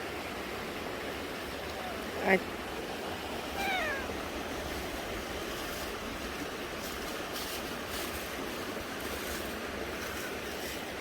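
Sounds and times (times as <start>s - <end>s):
small stream running: 0.0s - 11.0s.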